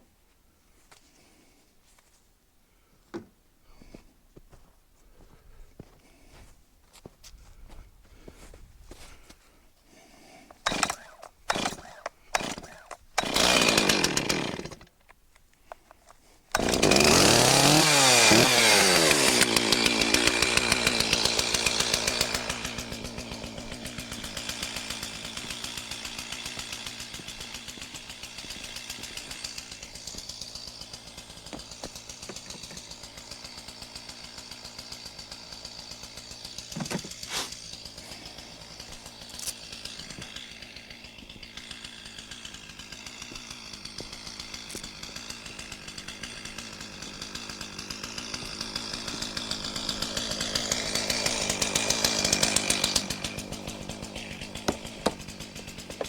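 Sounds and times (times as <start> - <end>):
chainsaw engine running: 10.1 - 14.9, 16.5 - 56.0
chainsaw pull cord: 10.5 - 56.0.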